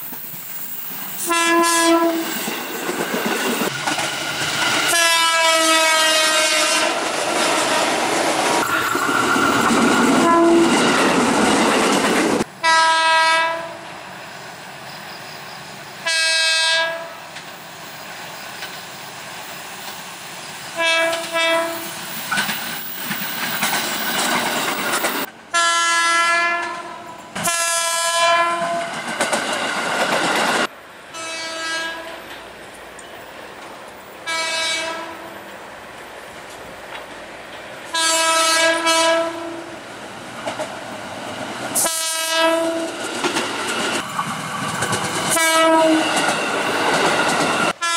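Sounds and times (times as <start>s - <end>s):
train running noise: 0.0s - 25.6s, 26.6s - 47.9s
train passing close by: 0.0s - 47.9s
train horn chord blasts: 1.3s - 2.3s, 4.9s - 7.0s, 10.2s - 10.8s, 12.6s - 13.9s, 20.8s - 21.9s, 34.3s - 35.3s, 37.9s - 39.7s, 41.8s - 42.9s, 45.3s - 46.1s.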